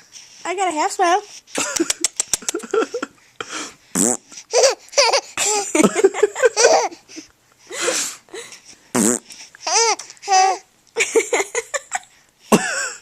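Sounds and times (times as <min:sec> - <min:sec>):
baby laughing: 0:04.4 - 0:07.3, 0:09.6 - 0:12.1.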